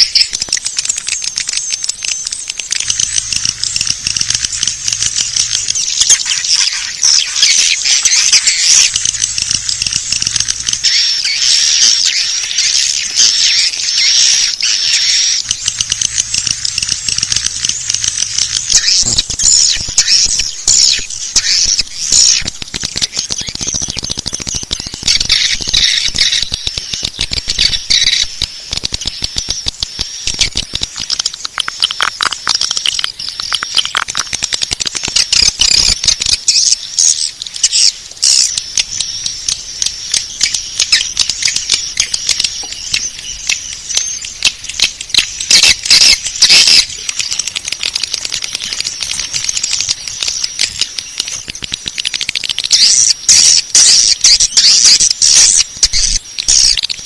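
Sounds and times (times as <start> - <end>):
swiftlets twittering: 0.0 - 57.0.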